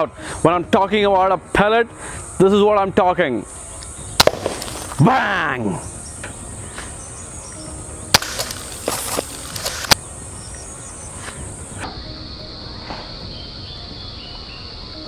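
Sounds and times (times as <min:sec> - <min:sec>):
high-pitched gas hiss: 0:00.0 - 0:15.0
air pistol shots: 0:04.2 - 0:05.2, 0:08.1 - 0:10.0.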